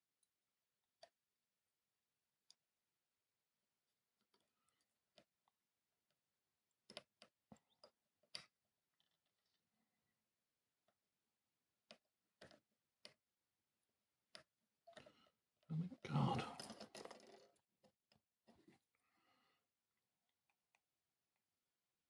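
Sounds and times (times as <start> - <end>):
faint clicks and taps of small tools: 0.0 - 1.3, 2.4 - 2.7, 3.8 - 9.8, 10.7 - 13.4, 14.2 - 15.5, 16.6 - 19.0, 19.6 - 21.6.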